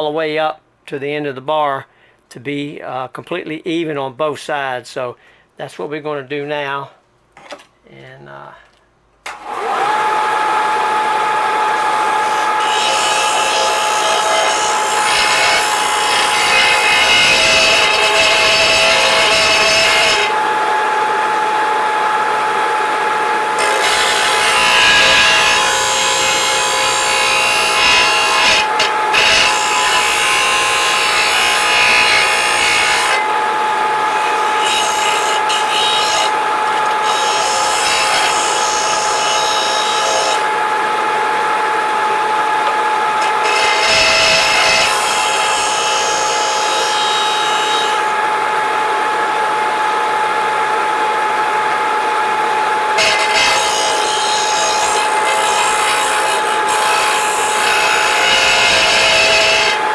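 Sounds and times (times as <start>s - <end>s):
power grinder whine: 9.3s - 48.2s, 52.3s - 59.9s
metal bar rasping on grinder: 12.6s - 20.4s, 23.6s - 33.2s, 43.2s - 48.0s, 53.0s - 59.8s.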